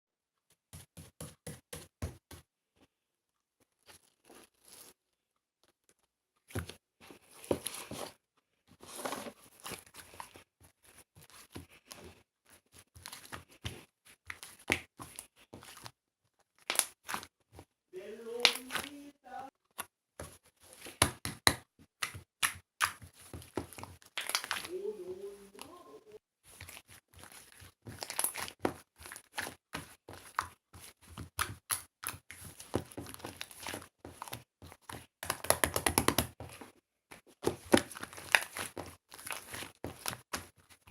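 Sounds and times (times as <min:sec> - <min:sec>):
slime crackling and popping: 0:16.5 - 0:17.4, 0:20.8 - 0:24.7, 0:26.6 - 0:36.4, 0:37.4 - 0:40.9.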